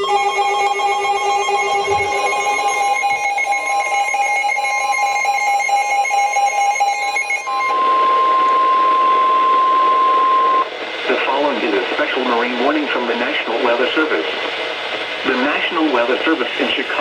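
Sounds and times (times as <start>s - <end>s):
rapidly pulsing alarm tone: 0.0s - 10.6s
steady alert tone: 1.5s - 3.0s.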